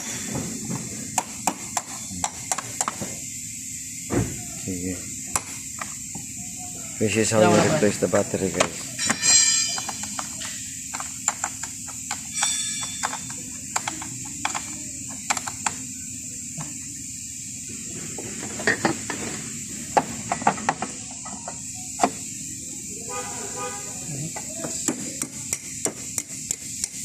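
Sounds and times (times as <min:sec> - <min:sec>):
steady hum: 0:00.0 - 0:27.0
hand tools clicking and knocking: 0:01.2 - 0:03.0, 0:08.5 - 0:15.8, 0:19.9 - 0:22.1, 0:24.3 - 0:27.0.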